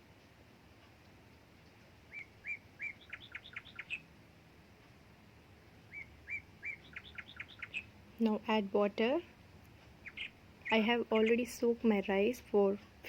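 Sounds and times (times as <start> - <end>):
songbird singing: 1.1 - 4.2, 5.7 - 12.9.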